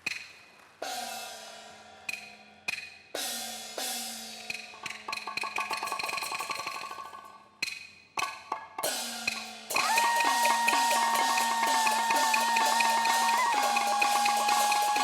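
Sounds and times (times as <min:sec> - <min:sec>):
wood block and drum roll: 0:00.0 - 0:15.0
loud held melody line: 0:09.7 - 0:15.0.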